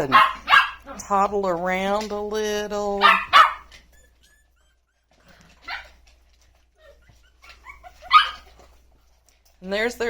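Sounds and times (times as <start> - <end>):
puppies yelping: 0.0 - 1.0, 3.0 - 9.1
puppies squeaking: 3.0 - 9.1.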